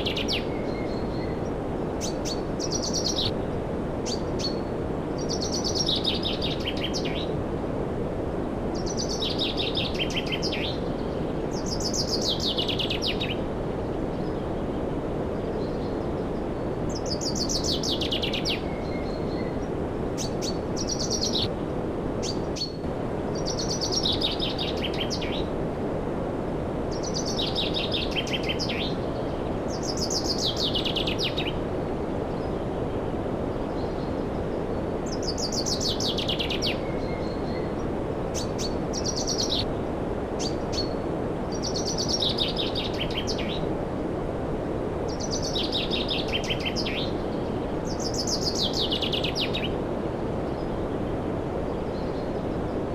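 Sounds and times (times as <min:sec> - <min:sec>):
steady rushing noise: 0:00.0 - 0:52.9.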